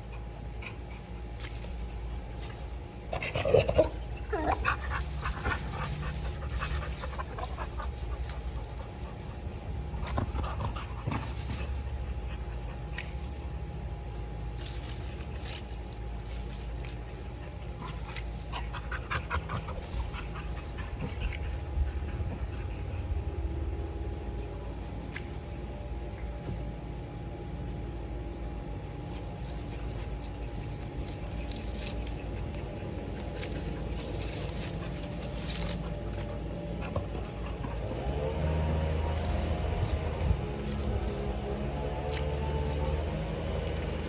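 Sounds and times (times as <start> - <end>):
dog whimpering: 3.4 - 5.0.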